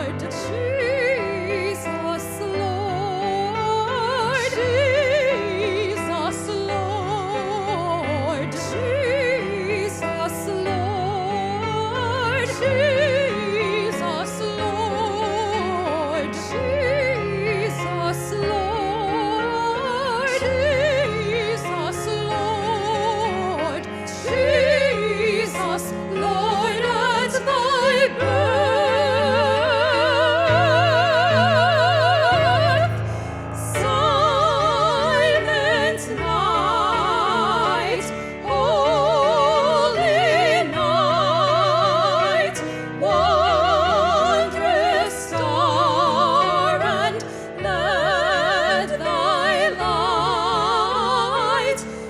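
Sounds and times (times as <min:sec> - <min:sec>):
operatic singing: 0:00.0 - 0:52.0.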